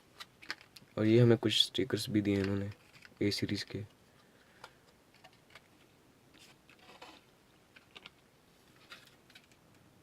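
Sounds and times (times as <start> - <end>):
packaging clicks and rustles: 0.2 - 1.0, 2.3 - 3.4, 4.4 - 9.6.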